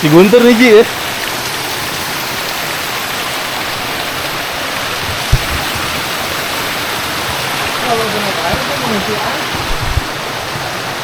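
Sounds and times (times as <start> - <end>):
stream water rushing: 0.0 - 11.0
low thump: 5.0 - 5.9.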